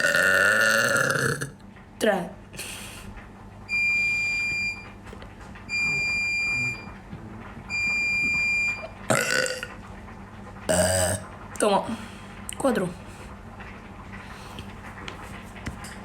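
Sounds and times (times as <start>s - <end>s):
loud burp: 0.0s - 1.6s, 9.1s - 9.7s, 10.7s - 11.2s
long electronic beeps: 3.7s - 4.8s, 5.7s - 6.9s, 7.7s - 8.9s.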